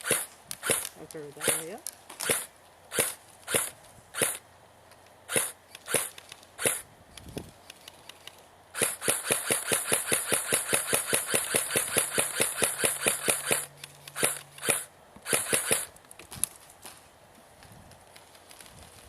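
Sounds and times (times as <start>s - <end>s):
airsoft gun firing: 0.0s - 4.4s, 5.3s - 6.8s, 8.8s - 15.9s.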